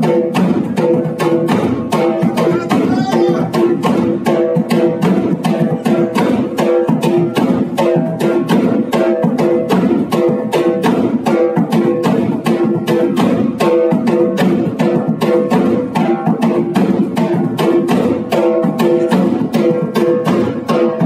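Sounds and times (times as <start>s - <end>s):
fast percussive beat: 0.0s - 21.0s.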